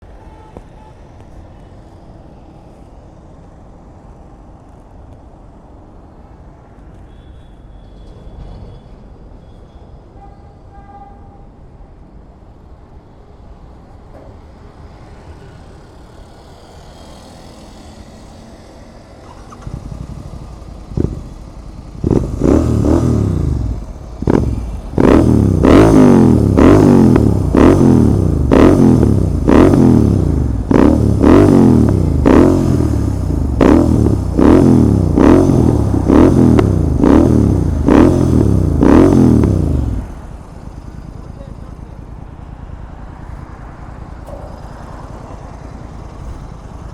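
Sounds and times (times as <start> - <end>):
motorcycle engine revving: 16.2 - 41.3.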